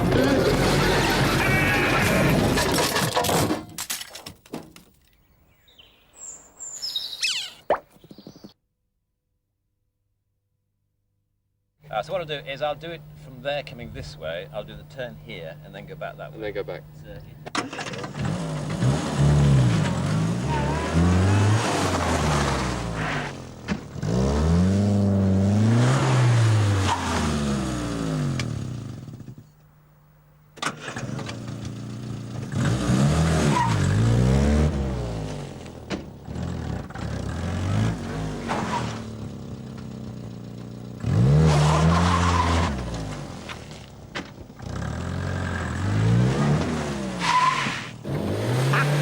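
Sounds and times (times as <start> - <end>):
car engine revving: 17.8 - 29.3, 30.8 - 49.0.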